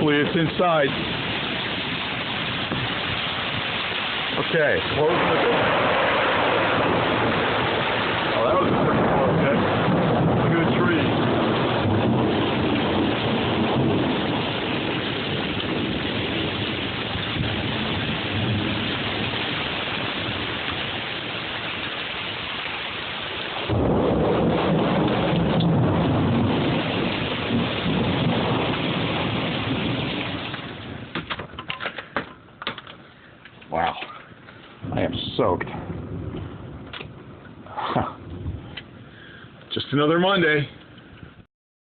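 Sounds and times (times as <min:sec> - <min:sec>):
heavy rain pouring: 0:00.0 - 0:41.5
loud low rumble: 0:04.8 - 0:19.7, 0:34.8 - 0:36.9.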